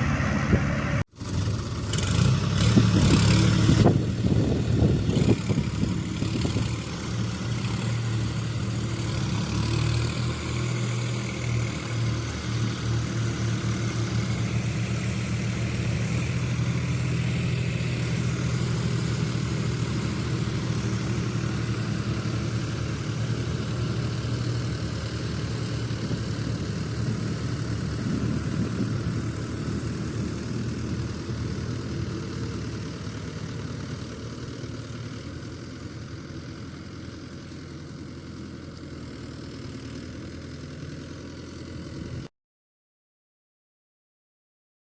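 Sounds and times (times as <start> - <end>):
heavy vehicle engine running: 0.0 - 42.3.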